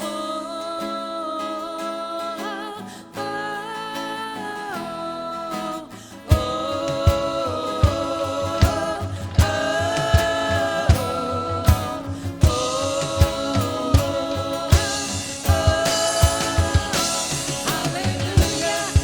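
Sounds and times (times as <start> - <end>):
guitar: 0.0 - 19.0
drum beat: 6.3 - 19.0
person singing long notes: 6.3 - 19.0.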